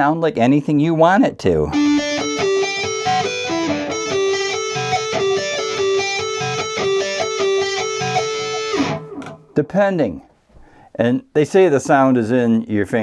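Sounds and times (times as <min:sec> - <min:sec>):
electric guitar riff: 0:01.7 - 0:09.6.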